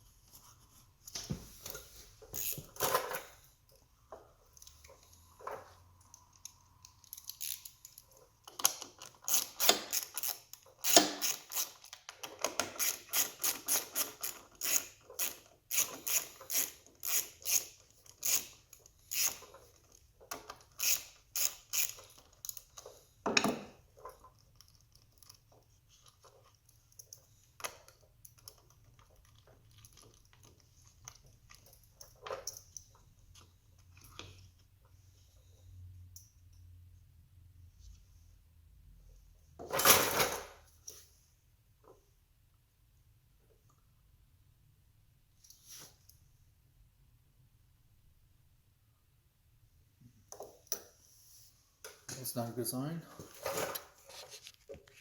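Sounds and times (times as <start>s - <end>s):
socket ratchet clicking: 6.4s - 19.5s, 20.4s - 22.8s.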